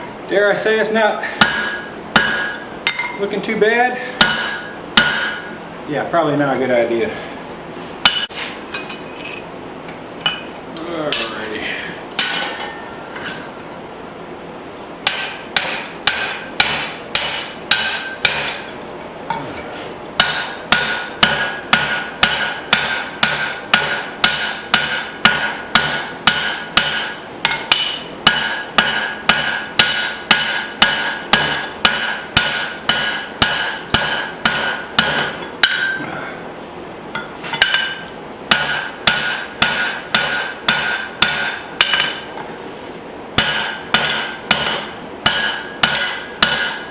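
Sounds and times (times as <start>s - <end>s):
anvil ringing: 1.4s - 3.2s, 4.2s - 5.5s, 20.2s - 36.0s, 37.2s - 42.3s, 43.4s - 46.9s
hammer striking hot steel on anvil: 1.4s - 3.2s, 4.2s - 5.6s, 8.0s - 9.4s, 12.1s - 13.4s, 15.0s - 36.0s, 37.1s - 42.5s, 43.4s - 46.9s.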